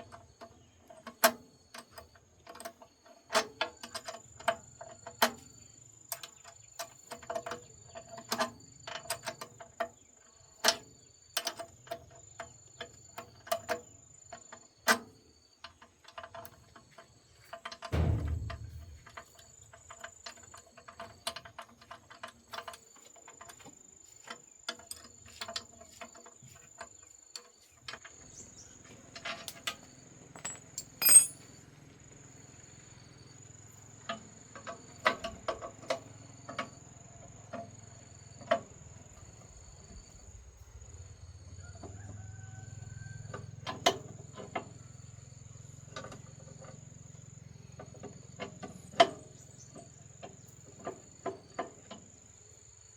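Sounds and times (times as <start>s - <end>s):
ringing metal clank: 18.0s - 19.4s, 30.4s - 31.4s
tools clinking on metal: 30.4s - 31.5s.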